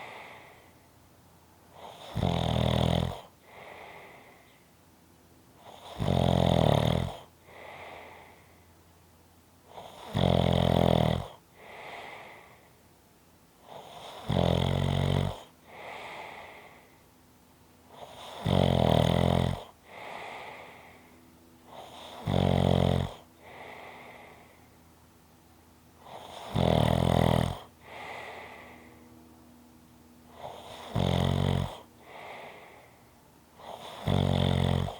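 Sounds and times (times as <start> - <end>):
person snoring: 1.8 - 4.4, 5.6 - 8.4, 9.7 - 12.6, 13.7 - 16.9, 18.0 - 21.0, 21.7 - 24.6, 26.0 - 28.9, 30.3 - 33.0, 33.6 - 34.9.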